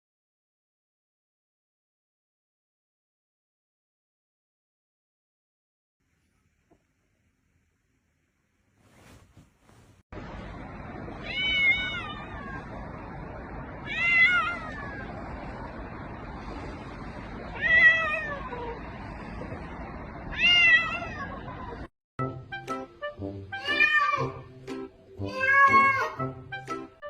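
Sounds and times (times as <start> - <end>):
cat meowing: 11.2 - 12.8, 13.8 - 15.1, 17.5 - 18.8, 20.3 - 21.5, 23.6 - 24.4, 25.3 - 26.2.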